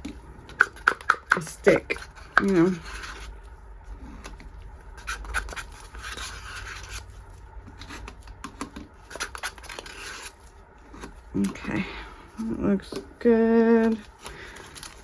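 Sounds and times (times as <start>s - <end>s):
plastic cup clicks and scrapes: 0.0s - 3.3s.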